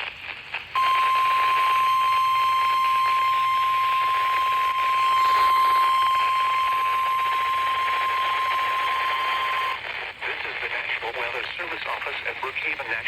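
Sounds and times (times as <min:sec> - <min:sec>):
radio static hiss: 0:00.0 - 0:13.0
steady high alarm tone: 0:00.8 - 0:09.8.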